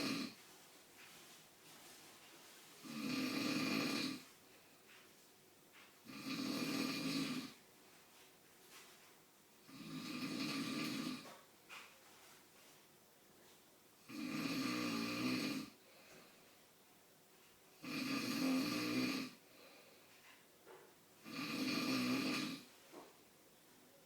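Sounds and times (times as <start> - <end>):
man snoring: 0.0 - 0.4, 2.8 - 4.3, 6.1 - 7.6, 9.6 - 11.2, 14.1 - 15.8, 17.8 - 19.4, 21.2 - 22.7
quiet breathing: 0.0 - 13.7, 14.8 - 23.2.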